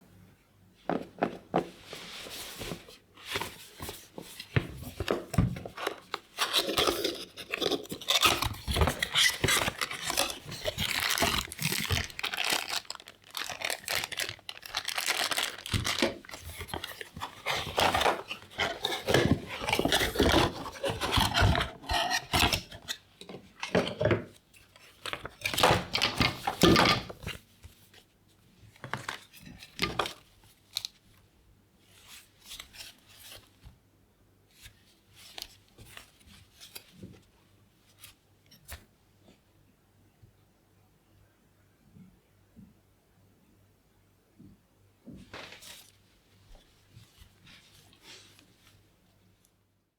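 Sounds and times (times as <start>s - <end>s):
rustling and crinkling: 0.8s - 31.2s, 45.1s - 49.5s.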